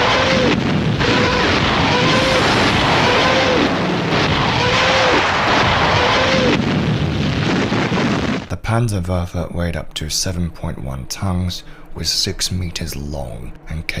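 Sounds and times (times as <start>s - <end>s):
moaning rocket shriek: 0.0s - 8.5s
rocket engines roaring: 0.0s - 8.5s.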